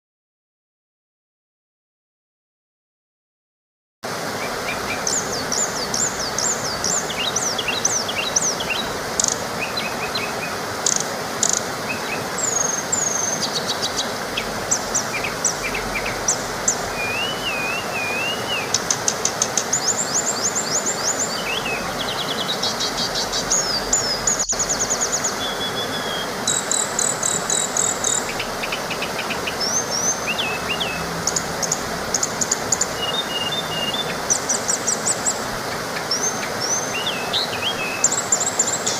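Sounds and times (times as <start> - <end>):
small waterfall rushing: 4.0 - 38.9
songbirds chirping: 4.2 - 38.9.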